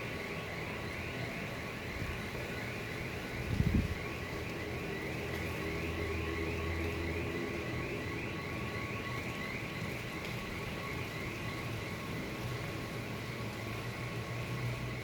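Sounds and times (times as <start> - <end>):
strong wind rushing: 3.4 - 4.0.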